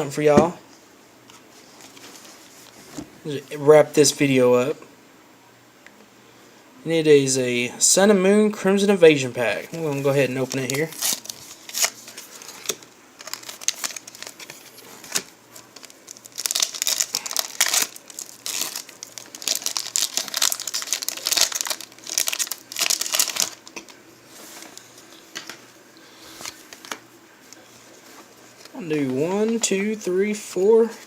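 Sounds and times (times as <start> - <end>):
foil wrapper crinkling and tearing: 9.9 - 24.8.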